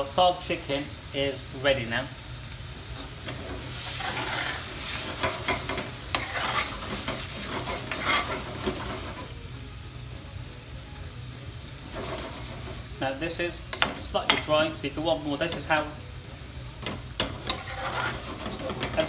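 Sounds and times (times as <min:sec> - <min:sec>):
curry sizzling in a pan: 0:00.0 - 0:19.0
stirring strokes: 0:03.0 - 0:09.3, 0:16.8 - 0:19.0.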